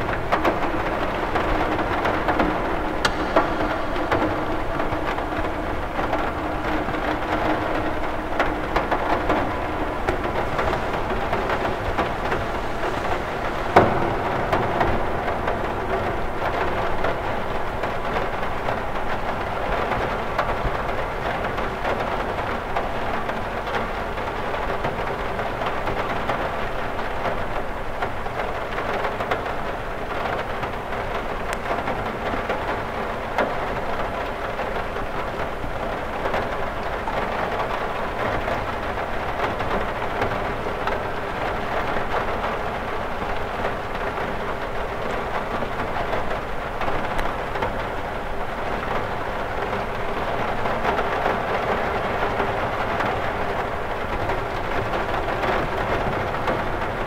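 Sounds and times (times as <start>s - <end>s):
rain on a window: 0.0s - 57.0s
sharp tap: 3.0s - 4.4s.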